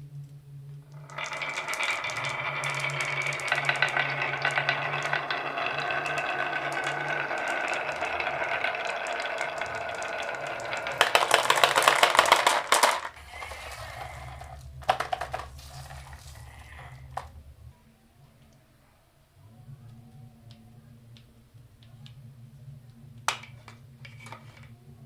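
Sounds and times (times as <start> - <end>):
marbles rolling and clicking: 0.9 - 17.4, 23.3 - 24.7.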